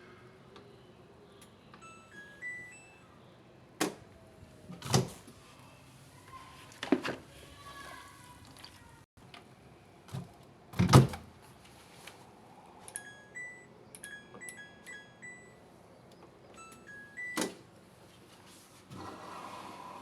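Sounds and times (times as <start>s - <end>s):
washing machine panel beeps: 1.8s - 3.0s, 13.0s - 15.6s, 16.6s - 17.6s.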